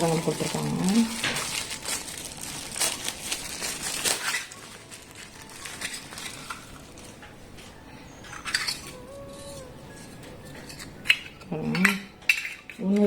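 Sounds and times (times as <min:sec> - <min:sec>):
packaging rustling: 0:00.0 - 0:07.3
metal pots clinking: 0:08.2 - 0:13.0.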